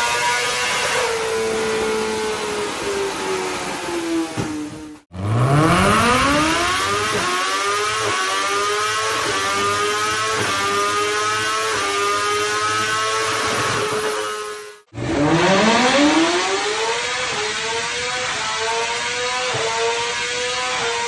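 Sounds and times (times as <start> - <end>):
motorcycle engine accelerating hard: 5.1 - 21.0.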